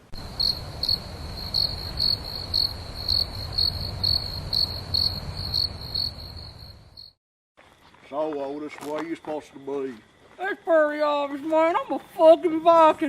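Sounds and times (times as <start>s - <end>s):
low rumble of night ambience: 0.0s - 7.1s
crickets chirping: 0.1s - 13.0s.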